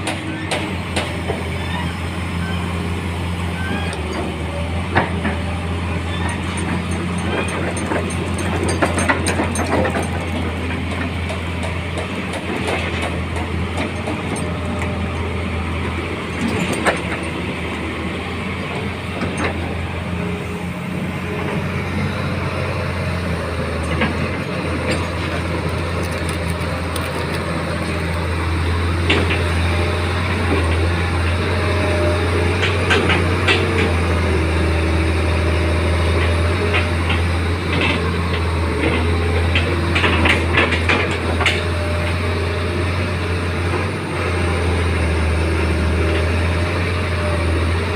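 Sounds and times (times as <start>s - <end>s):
excavator diesel engine running: 0.0s - 47.9s
metallic knocks and clanks: 6.2s - 14.5s.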